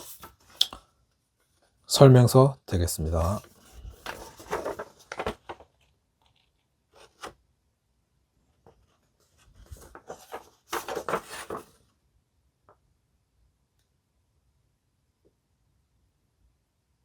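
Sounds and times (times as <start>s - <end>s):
paper rustling and crinkling: 0.0s - 0.6s, 3.2s - 6.4s, 7.0s - 7.4s, 8.7s - 11.8s.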